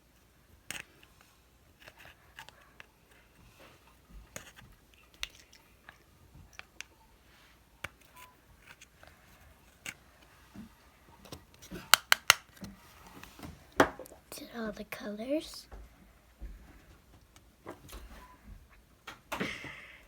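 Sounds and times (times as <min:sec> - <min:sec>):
slime clicking: 0:11.9 - 0:12.5.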